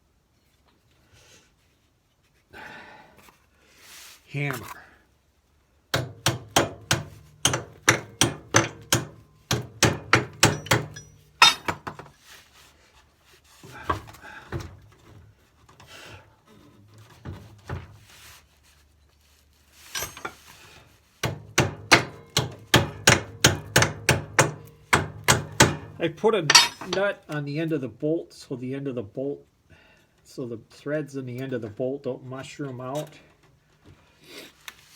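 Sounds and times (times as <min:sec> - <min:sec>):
hammer striking metal bolt: 0:05.9 - 0:12.0, 0:21.2 - 0:27.0.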